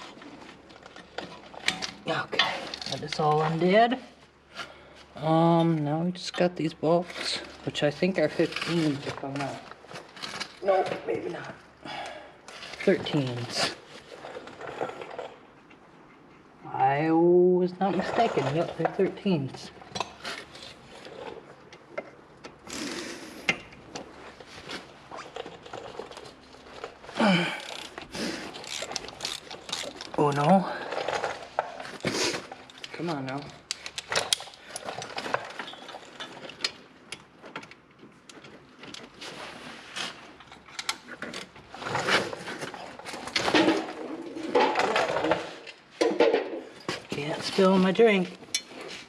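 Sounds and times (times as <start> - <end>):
metal tools clattering and scraping: 23.5 - 36.9, 38.4 - 49.0
hand tools clicking and rattling: 25.1 - 39.2.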